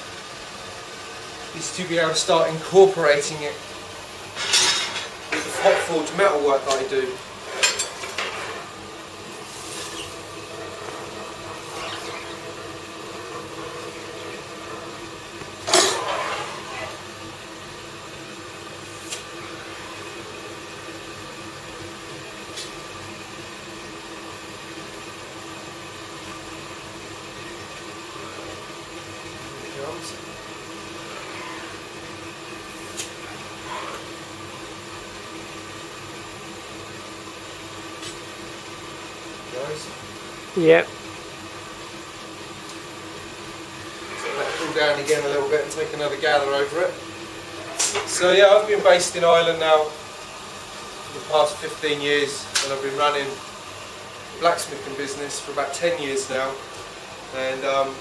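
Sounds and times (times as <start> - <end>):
rushing hum of studio equipment: 0.0 - 40.6.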